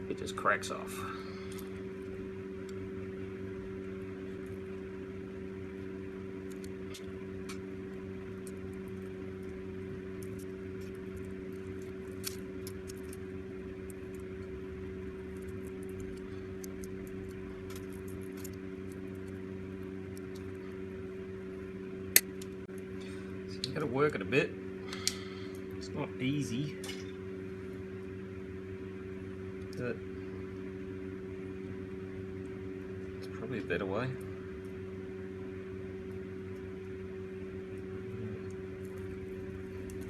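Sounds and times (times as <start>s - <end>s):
low hum: 0.0s - 40.0s
side cutters cracking plastic: 6.4s - 13.2s.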